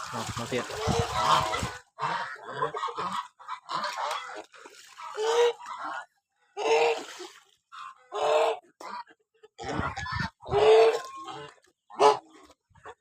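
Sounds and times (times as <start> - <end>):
geese honking: 0.0 - 7.0.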